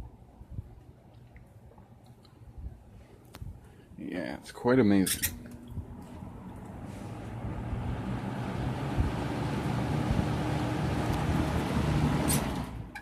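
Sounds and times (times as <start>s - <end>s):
box fan running: 3.2s - 13.0s.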